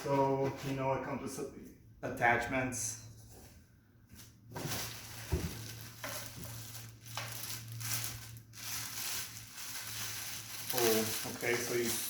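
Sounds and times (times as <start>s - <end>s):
packaging rustling: 4.2s - 12.0s.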